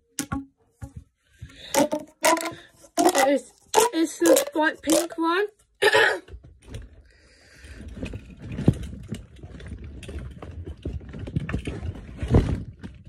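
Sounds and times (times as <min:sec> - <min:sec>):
plastic pop tube clicks and crackles: 0:00.1 - 0:00.6, 0:01.5 - 0:05.2.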